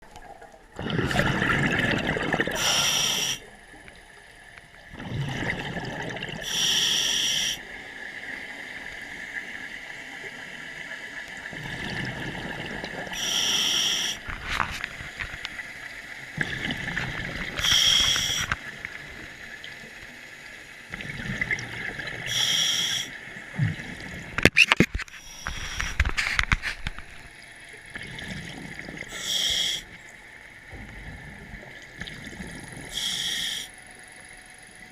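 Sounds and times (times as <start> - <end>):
bubbly exhalation: 0.7 - 2.8, 4.9 - 6.5
regulator inhalation hiss: 2.6 - 3.5, 6.4 - 7.6, 13.2 - 14.2, 17.6 - 18.6, 22.2 - 23.2, 25.2 - 26.1, 29.1 - 30.0, 32.9 - 33.8.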